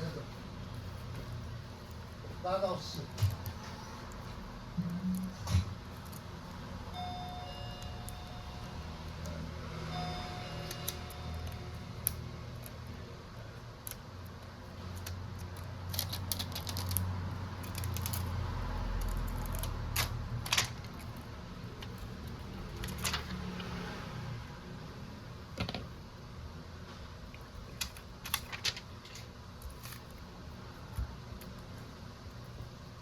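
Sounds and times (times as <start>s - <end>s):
brief tone: 6.9s - 12.0s.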